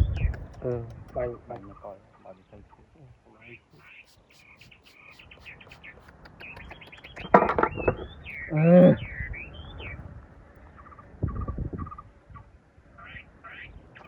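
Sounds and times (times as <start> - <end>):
birds chirping: 0.0 - 14.0
lower bird call: 3.4 - 14.0
knocks: 7.2 - 8.1.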